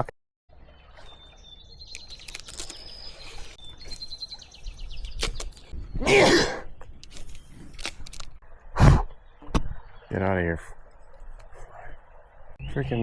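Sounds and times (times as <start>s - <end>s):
songbird singing trills: 0.7s - 6.0s.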